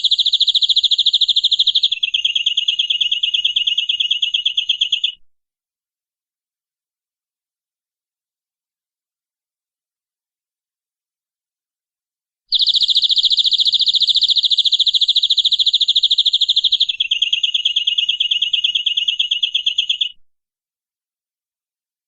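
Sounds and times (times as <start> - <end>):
canary trilling: 0.0 - 5.2, 12.5 - 20.1.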